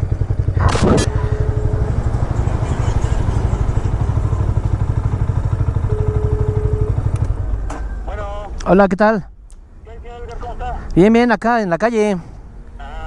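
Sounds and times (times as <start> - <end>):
small motorcycle engine running: 0.2 - 7.8
steady high tone: 0.7 - 7.2.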